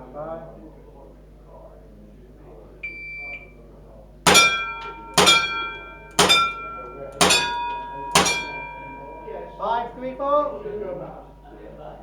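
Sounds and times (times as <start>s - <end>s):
shot timer beep: 4.3s - 9.3s
bullets ringing on steel plates: 4.3s - 10.3s.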